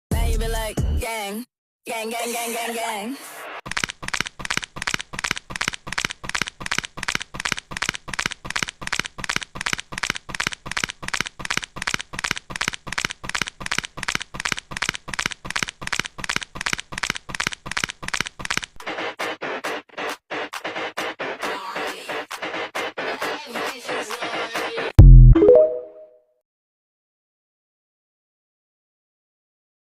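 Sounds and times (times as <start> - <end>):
rapid harsh repeated noises: 3.6 - 25.0.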